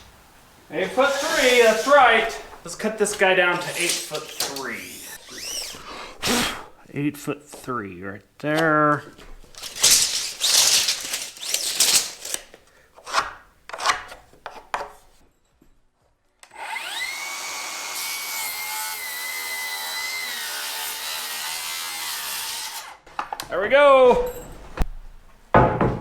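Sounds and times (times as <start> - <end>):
power saw cutting board: 0.8 - 6.4, 16.4 - 23.0
lumber scraping and knocking: 25.5 - 26.0.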